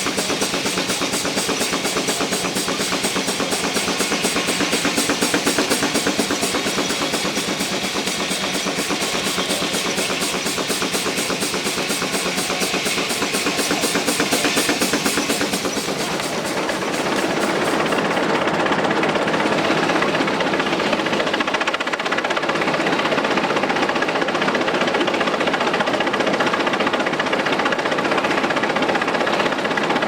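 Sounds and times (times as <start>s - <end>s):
sawmill machinery knocking: 0.0s - 21.7s
steady mechanical clatter: 0.0s - 30.0s.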